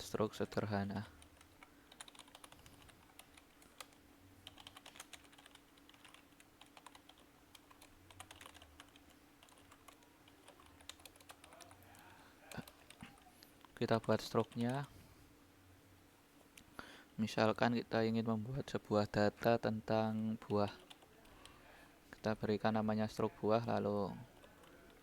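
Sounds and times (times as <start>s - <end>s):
faint steady hum: 0.0s - 25.0s
faint keyboard typing: 0.5s - 15.0s, 20.2s - 21.6s, 24.2s - 25.0s.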